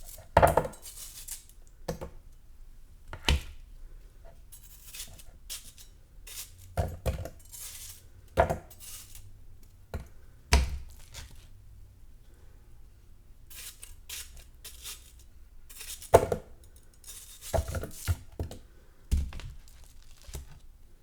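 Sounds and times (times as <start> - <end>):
knife chopping watermelon: 10.0 - 11.5, 17.5 - 20.6
crisp slicing: 19.3 - 20.6.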